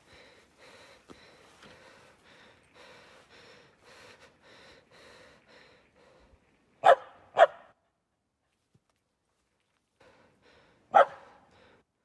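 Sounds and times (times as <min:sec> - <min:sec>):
rhythmic breathing or panting: 0:00.0 - 0:06.5
dog barking: 0:06.8 - 0:07.7, 0:10.9 - 0:11.4.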